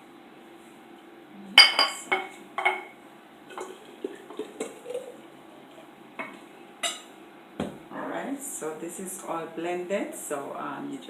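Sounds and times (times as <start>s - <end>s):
utensil clinking against glass: 6.2s - 7.1s.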